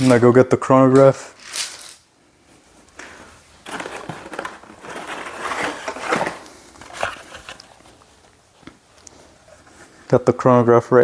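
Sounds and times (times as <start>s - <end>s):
rustling and crinkling handling: 0.0s - 10.1s.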